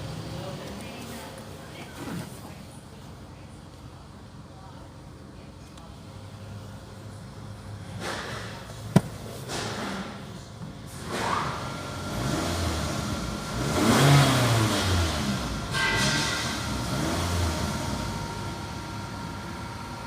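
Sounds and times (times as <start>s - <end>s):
car engine revving: 11.0s - 19.9s
steady high whine: 16.5s - 20.0s.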